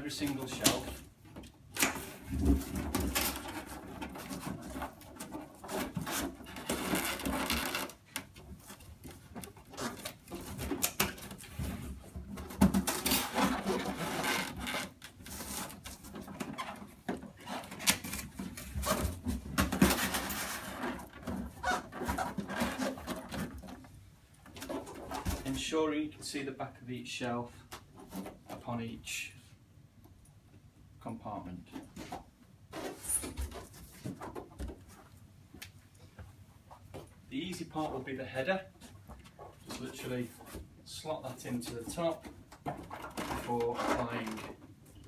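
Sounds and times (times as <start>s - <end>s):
cardboard rubbing and scraping: 2.0s - 23.6s, 31.9s - 35.0s.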